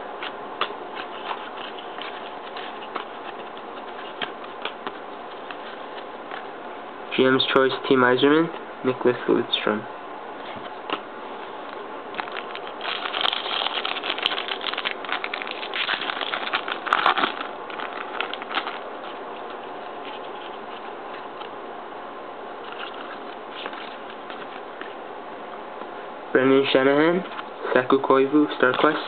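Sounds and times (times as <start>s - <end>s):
steady background hiss: 0.0s - 29.0s
card pack wrapper crinkling: 0.2s - 6.4s, 12.1s - 21.5s, 22.6s - 25.0s
cards being handled: 0.2s - 6.5s, 11.7s - 21.5s, 22.6s - 25.0s.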